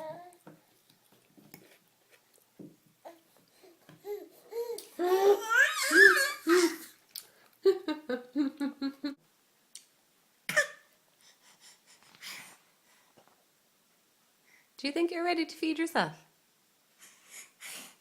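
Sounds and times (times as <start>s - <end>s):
baby babbling: 0.0s - 0.4s, 3.0s - 6.9s
baby laughing: 4.2s - 6.9s
baby squealing: 4.7s - 6.9s.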